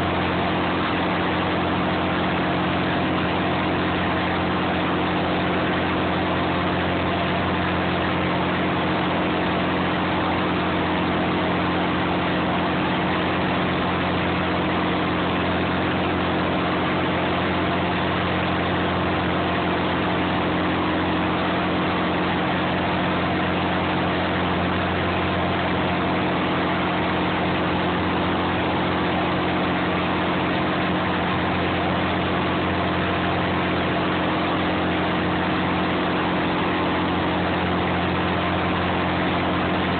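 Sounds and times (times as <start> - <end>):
boat engine droning: 0.0 - 39.9.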